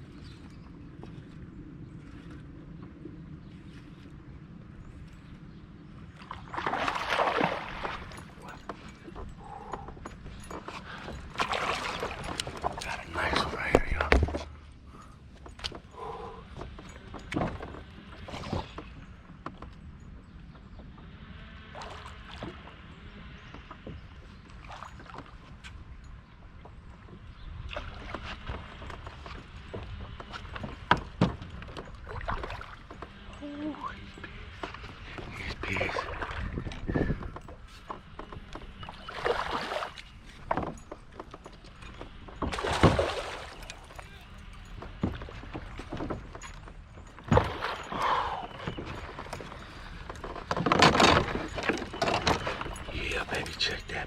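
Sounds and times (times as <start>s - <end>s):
water splashing against boat: 5.9s - 19.7s, 27.6s - 54.0s.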